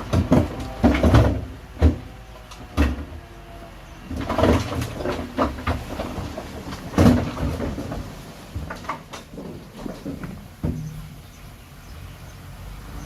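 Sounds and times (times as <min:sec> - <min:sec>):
heavy knocks of rock: 0:00.0 - 0:03.2, 0:04.1 - 0:11.2.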